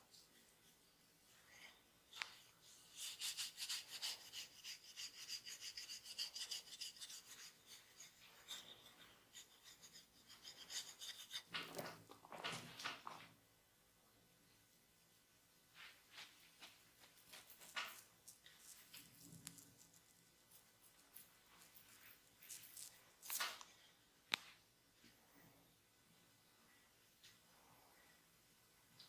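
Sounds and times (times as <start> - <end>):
hands rubbing skin and hair: 15.8 - 23.6.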